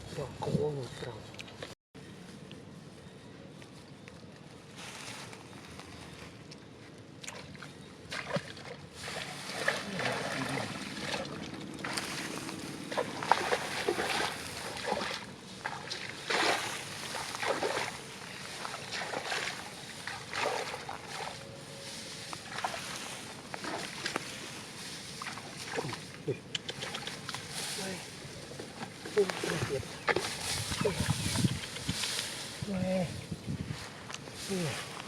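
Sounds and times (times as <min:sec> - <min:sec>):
water splashing and sloshing: 0:07.1 - 0:32.4.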